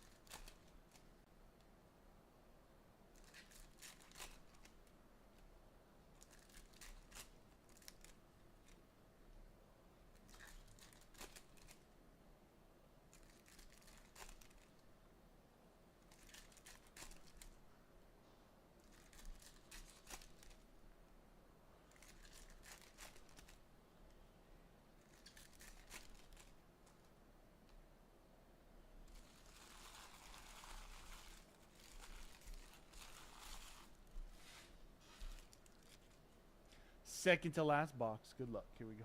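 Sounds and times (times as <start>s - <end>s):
wrappers tearing and crinkling: 0.0s - 1.1s, 3.2s - 4.8s, 6.2s - 8.8s, 10.2s - 11.8s, 13.1s - 14.8s, 16.1s - 17.6s, 18.8s - 20.6s, 21.9s - 23.6s, 25.0s - 26.6s, 29.0s - 36.2s.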